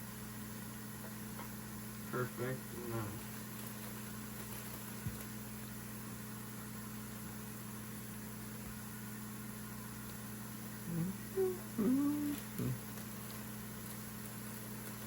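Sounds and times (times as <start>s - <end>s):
low hum: 10.8s - 12.8s.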